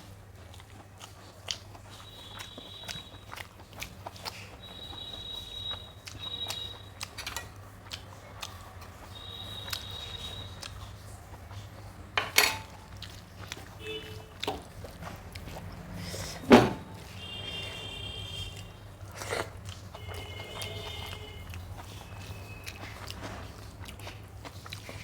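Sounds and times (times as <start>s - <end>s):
chewing: 0.0s - 25.0s
clatters against a plate: 12.2s - 12.8s.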